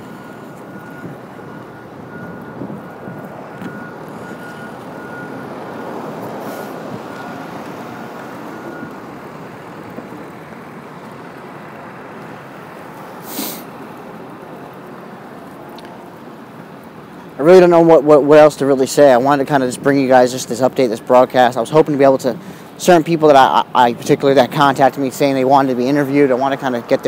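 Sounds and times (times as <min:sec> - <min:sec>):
reversing alarm beeping: 0:00.0 - 0:10.3
vehicles running: 0:00.0 - 0:27.0
short sharp hiss: 0:13.2 - 0:13.8.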